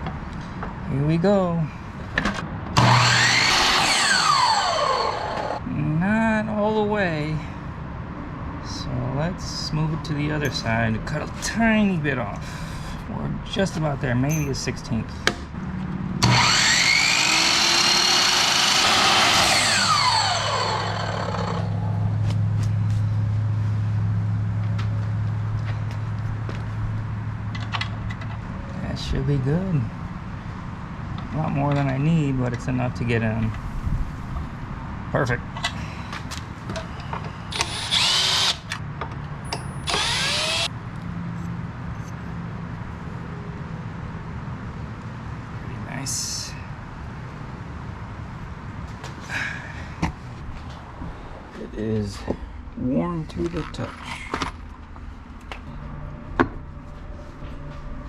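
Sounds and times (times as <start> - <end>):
power cutting tool grinding: 2.8 - 5.6, 16.2 - 21.9, 37.5 - 38.8, 39.8 - 40.7
steady low hum: 44.9 - 58.0.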